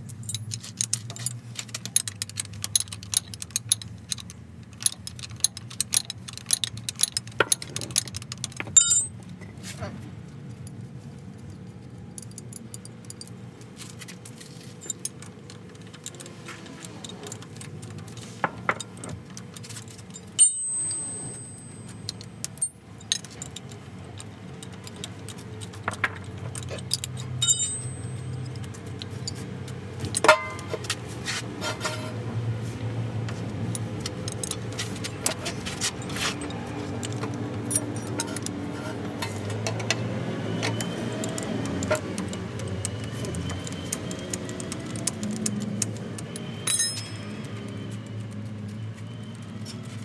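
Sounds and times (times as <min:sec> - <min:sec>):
metal tools clinking: 0:00.1 - 0:09.3, 0:12.2 - 0:30.9, 0:40.6 - 0:47.8
sharp metallic knocks: 0:20.4 - 0:21.9.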